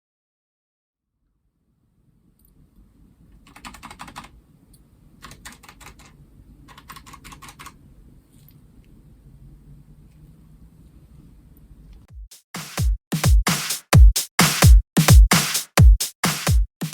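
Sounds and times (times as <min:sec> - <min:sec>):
mechanical keyboard typing: 0:03.5 - 0:04.3, 0:05.2 - 0:07.8.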